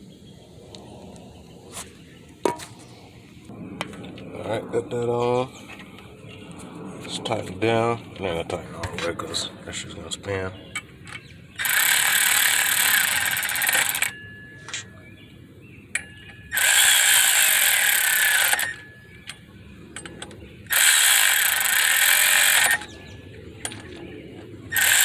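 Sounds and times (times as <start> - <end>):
ratchet wrench clicking: 11.6 - 14.1, 20.7 - 22.9, 24.7 - 25.0.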